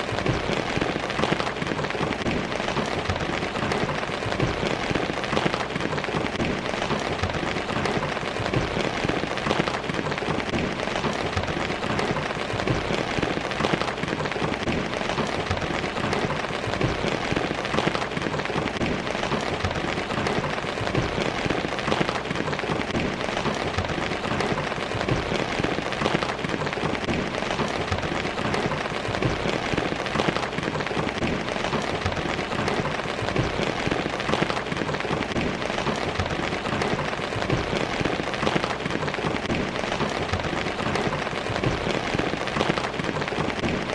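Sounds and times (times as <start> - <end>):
steady rainfall: 0.0 - 43.9.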